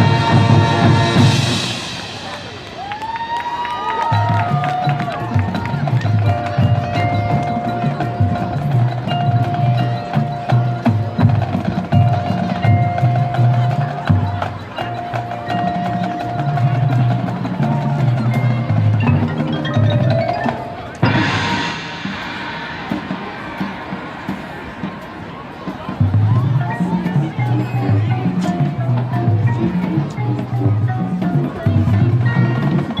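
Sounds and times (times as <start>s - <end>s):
held brass tone: 0.0s - 2.6s
drum strokes: 0.0s - 3.4s, 4.2s - 33.0s
mallet percussion: 0.0s - 33.0s.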